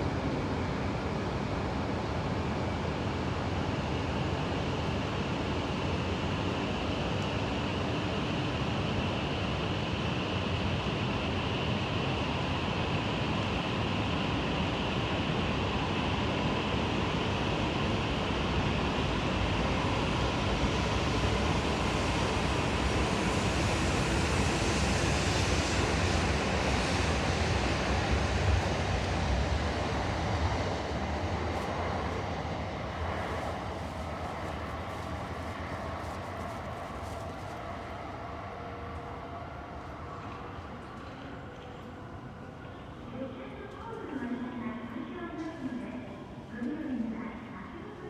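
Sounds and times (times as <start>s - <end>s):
bullet train rushing rumble: 14.5s - 43.0s.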